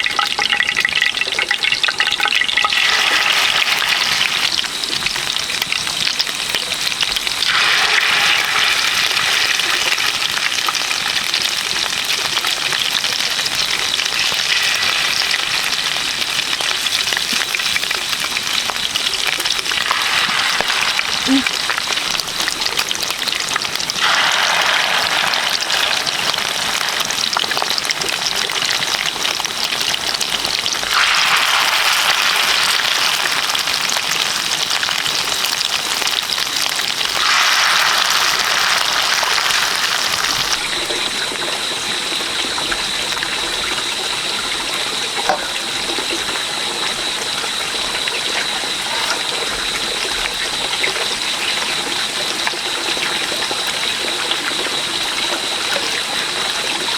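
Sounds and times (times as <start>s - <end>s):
running water rushing: 18.6s - 35.9s.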